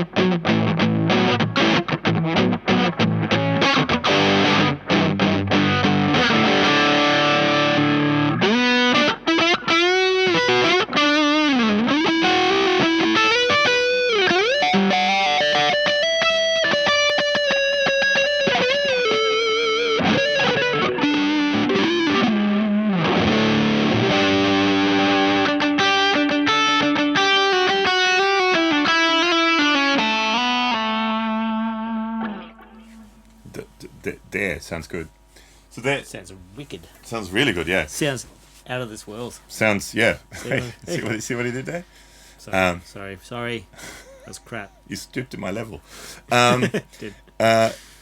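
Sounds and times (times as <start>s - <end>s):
distorted electric guitar: 0.0s - 33.7s.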